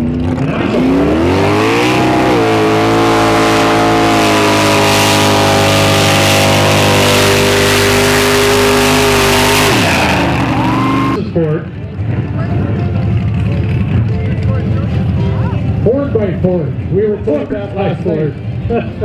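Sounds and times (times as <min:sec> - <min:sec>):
truck engines revving: 0:00.4 - 0:11.2, 0:12.3 - 0:16.0.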